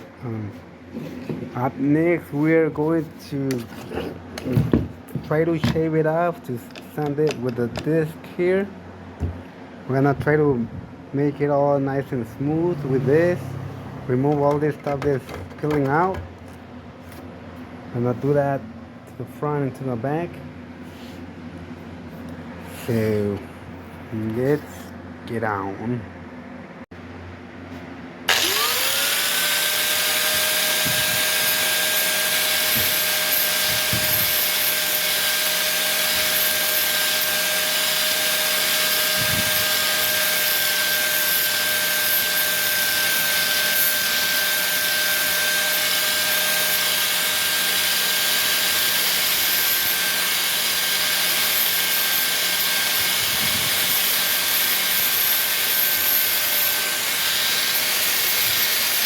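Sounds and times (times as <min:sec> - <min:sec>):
angle grinder whine: 0:28.3 - 0:59.0.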